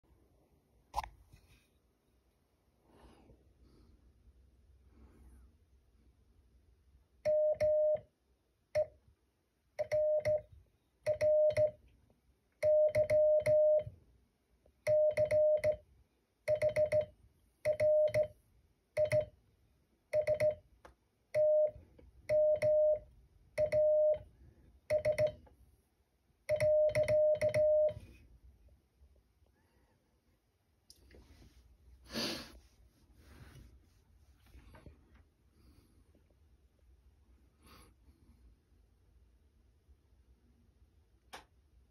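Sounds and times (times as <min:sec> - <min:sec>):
morse code tone: 0:12.6 - 0:13.9, 0:14.9 - 0:15.8, 0:16.5 - 0:17.1, 0:17.7 - 0:18.3, 0:21.4 - 0:24.2, 0:26.5 - 0:28.0.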